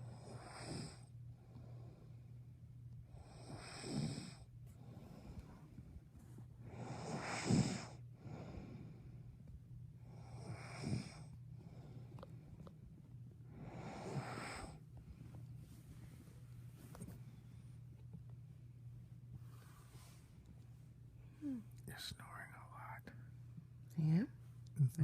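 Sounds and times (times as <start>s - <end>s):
person snoring: 6.7s - 8.0s.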